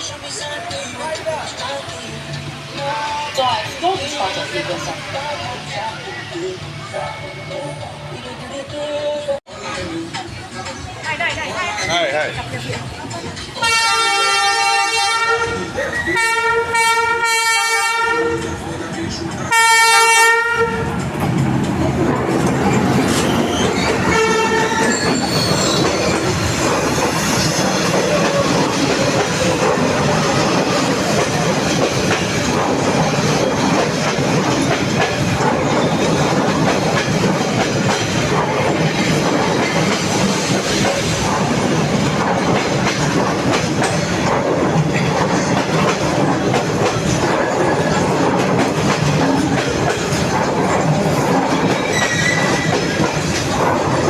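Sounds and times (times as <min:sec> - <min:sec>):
train wheels rumbling on rails: 0:00.0 - 0:08.8, 0:09.5 - 0:54.0
train horn blast: 0:13.6 - 0:18.5, 0:19.5 - 0:20.9, 0:24.0 - 0:25.0.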